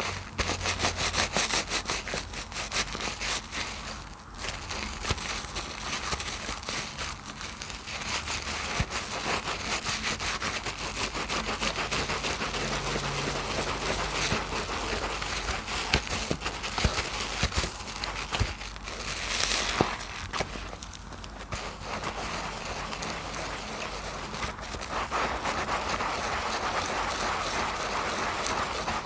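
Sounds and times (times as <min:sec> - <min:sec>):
soap foam crackling: 0:00.0 - 0:29.0.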